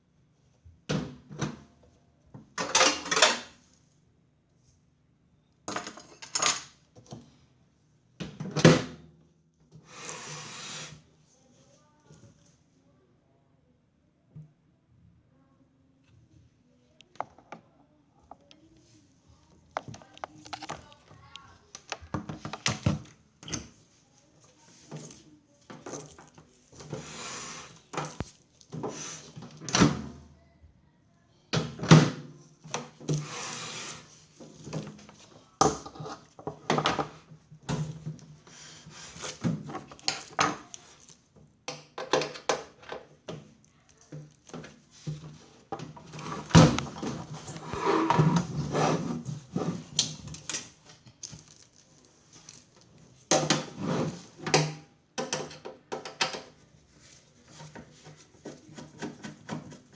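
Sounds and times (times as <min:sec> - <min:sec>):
long sliding scrapes: 0:09.9 - 0:11.0, 0:26.9 - 0:27.8, 0:33.2 - 0:34.2, 0:47.2 - 0:49.9.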